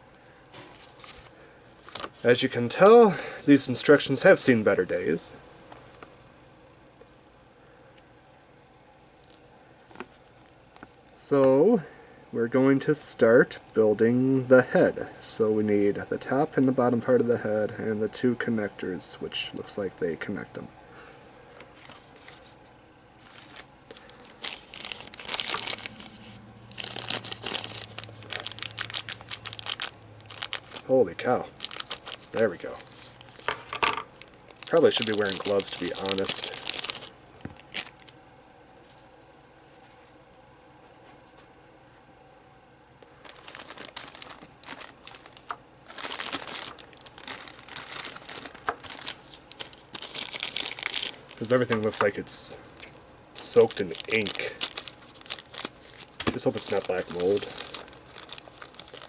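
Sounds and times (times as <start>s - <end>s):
plastic bag crinkling and tearing: 23.2s - 38.2s, 43.2s - 59.0s.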